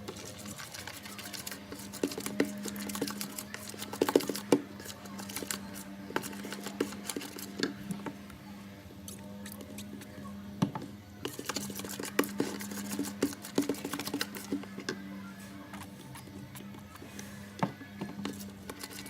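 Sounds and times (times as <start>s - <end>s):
clicks and taps mixing slime: 0.0s - 8.2s, 10.6s - 15.0s.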